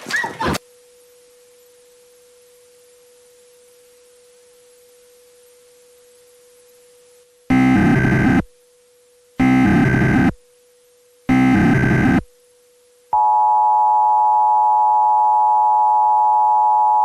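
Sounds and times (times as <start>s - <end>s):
faint steady tone with hiss: 0.7s - 17.0s
harsh electronic data bursts: 7.5s - 8.5s, 9.4s - 10.4s, 11.3s - 12.3s.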